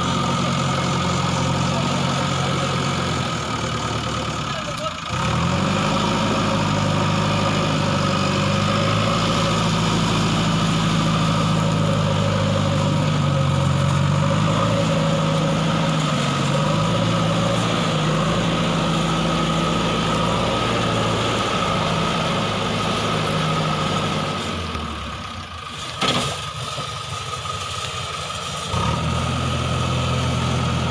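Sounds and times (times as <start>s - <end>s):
diesel engine running: 0.0s - 30.9s.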